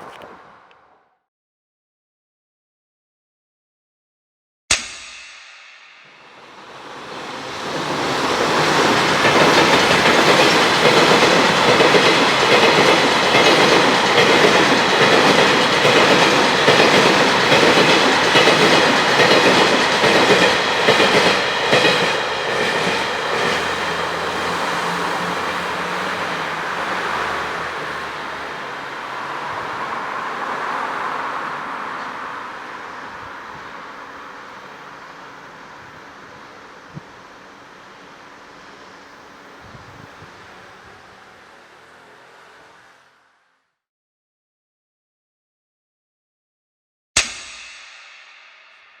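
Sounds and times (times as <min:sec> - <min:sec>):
freight train passing: 0:05.4 - 0:43.4
wheels clicking over rail joints: 0:07.5 - 0:26.3.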